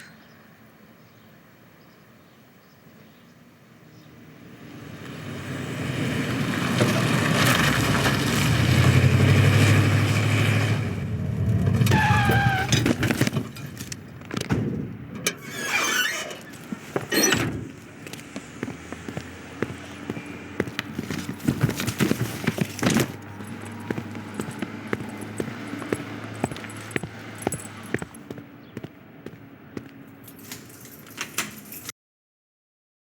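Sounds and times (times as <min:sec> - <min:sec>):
car engine passing: 0:04.2 - 0:12.6, 0:17.3 - 0:30.0
rattles and knocks: 0:11.4 - 0:17.8, 0:20.6 - 0:28.2
tyre squeal: 0:11.6 - 0:13.8, 0:15.2 - 0:17.8.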